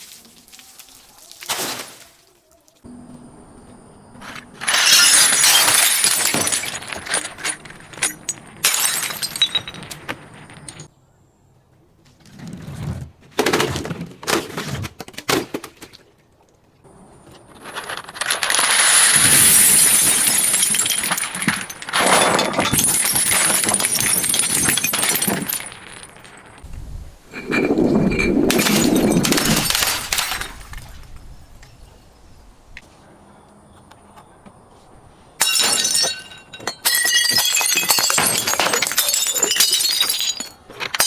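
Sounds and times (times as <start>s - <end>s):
glass bottles breaking and crunching: 4.6s - 10.9s, 17.6s - 26.6s, 27.4s - 31.0s, 35.4s - 41.0s.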